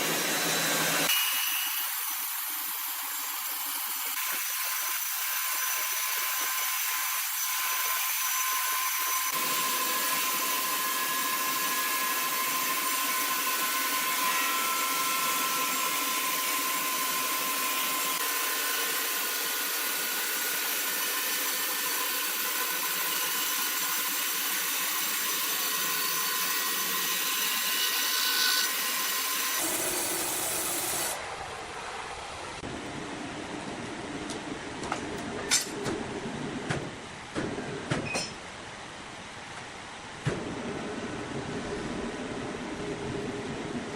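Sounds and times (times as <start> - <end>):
sawmill saw cutting wood: 0.0 - 31.2.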